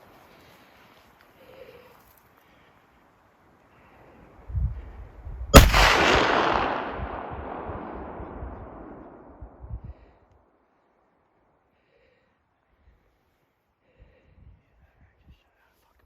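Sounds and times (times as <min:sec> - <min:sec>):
low thumps: 0:05.6 - 0:09.7
rifle shot booming: 0:05.6 - 0:09.7.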